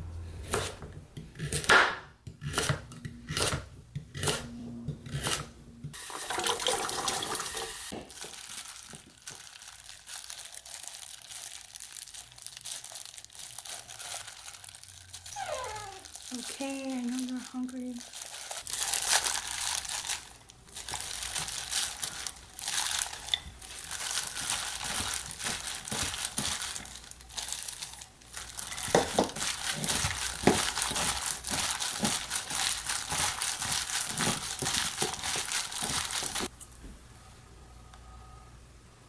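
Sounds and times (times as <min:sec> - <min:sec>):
packaging crinkling: 0:07.9 - 0:36.5.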